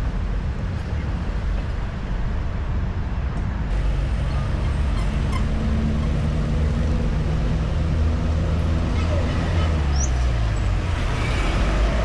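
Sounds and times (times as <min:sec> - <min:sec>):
road traffic rumble: 0:00.0 - 0:12.0
car engine hum: 0:03.7 - 0:12.0.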